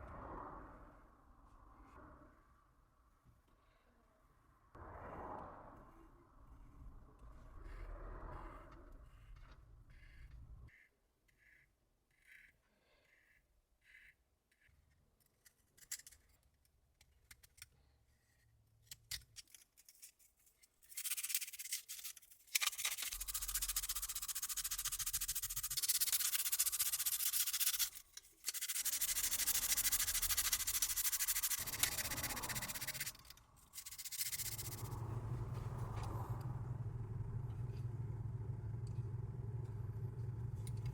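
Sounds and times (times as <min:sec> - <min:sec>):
sandpaper rubbing: 0:20.8 - 0:35.0.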